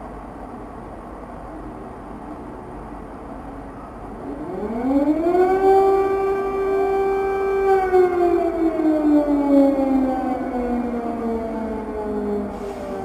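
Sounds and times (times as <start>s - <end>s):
air raid siren wailing: 4.2s - 13.0s.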